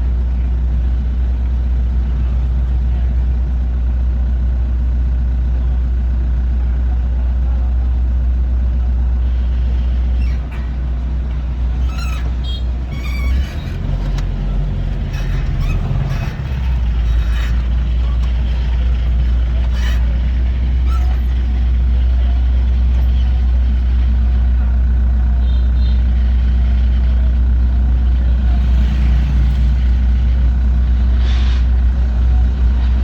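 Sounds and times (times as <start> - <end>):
combine harvester engine rumbling: 0.0 - 33.0
clattering: 10.2 - 21.5.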